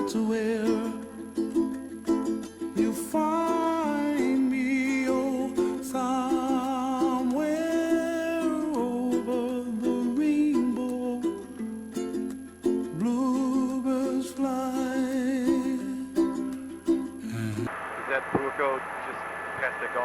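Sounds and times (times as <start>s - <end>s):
plucked strings rhythm: 0.0s - 17.7s.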